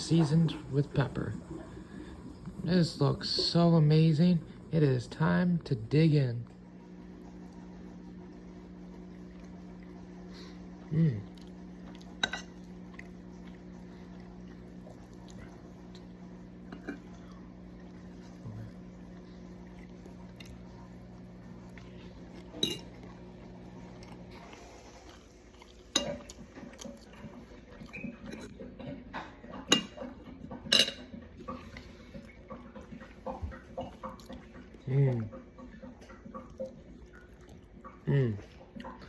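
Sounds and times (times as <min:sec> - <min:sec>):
cutlery clinking on a plate: 0:12.2 - 0:12.6, 0:22.6 - 0:23.0, 0:25.9 - 0:26.4, 0:29.2 - 0:31.2.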